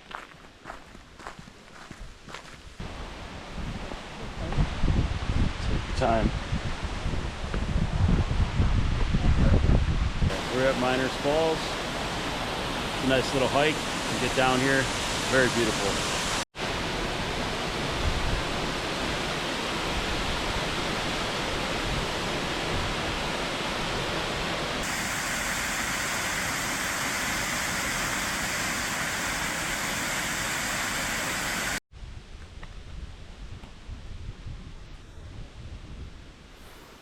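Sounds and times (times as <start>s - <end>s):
waterfall roaring: 10.3s - 31.8s.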